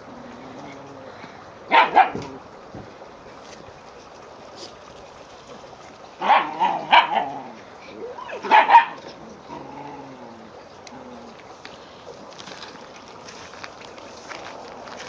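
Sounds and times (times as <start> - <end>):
dog barking: 1.7 - 2.3, 6.2 - 7.3, 8.3 - 9.0.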